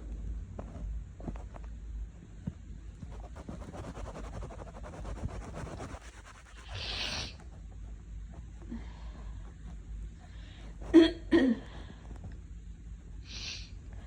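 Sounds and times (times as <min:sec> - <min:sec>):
close-up scratching and rubbing: 0:00.5 - 0:11.0
sharp sniff through nose: 0:06.6 - 0:07.4.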